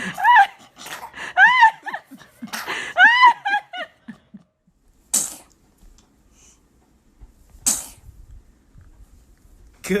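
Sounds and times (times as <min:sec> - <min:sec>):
baby sneezing: 0:05.1 - 0:05.6, 0:07.6 - 0:08.1.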